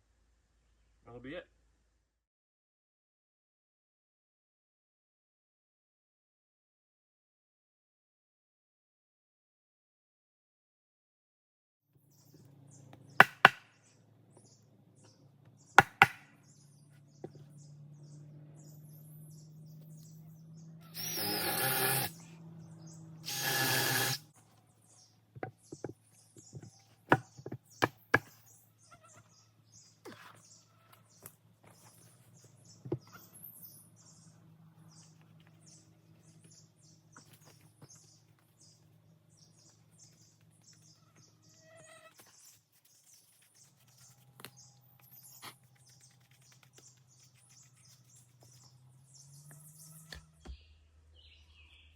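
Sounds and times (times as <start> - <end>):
knocks of wood and tools: 13.2 - 13.8, 15.8 - 16.4, 25.3 - 28.4
power drill boring into wood: 20.9 - 22.2, 23.2 - 24.3.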